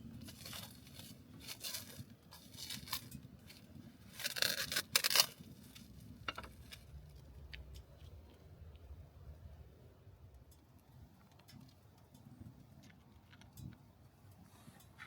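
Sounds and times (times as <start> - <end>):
rustling and scraping handling: 0.0 - 8.8, 12.8 - 15.0.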